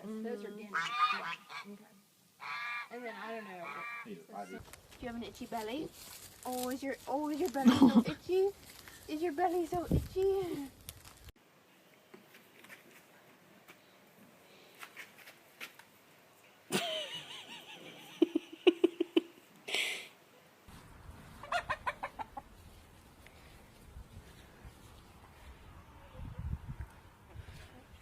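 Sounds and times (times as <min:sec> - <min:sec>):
chickens clucking and squawking: 0:00.7 - 0:01.8, 0:02.4 - 0:04.6, 0:21.1 - 0:22.8, 0:25.6 - 0:26.8.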